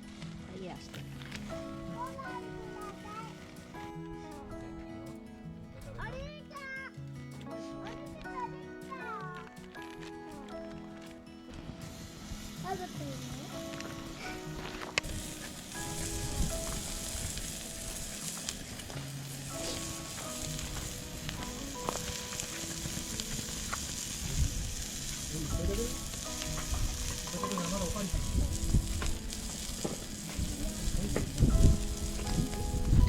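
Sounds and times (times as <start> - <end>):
soft background music: 0.0 - 33.0
food sizzling in a pan: 11.7 - 33.0.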